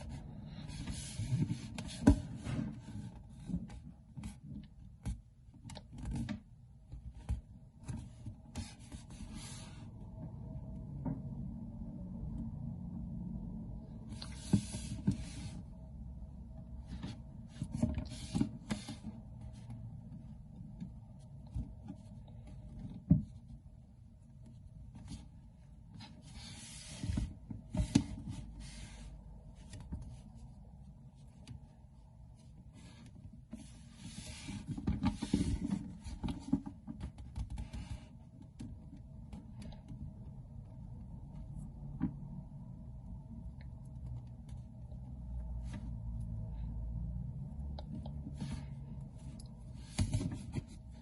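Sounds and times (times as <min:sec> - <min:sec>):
rubbing and rustling: 0:00.0 - 0:10.5, 0:13.8 - 0:51.0.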